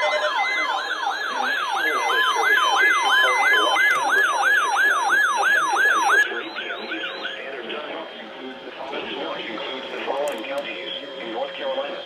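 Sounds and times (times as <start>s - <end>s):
electronic siren yelping: 0.0s - 7.4s.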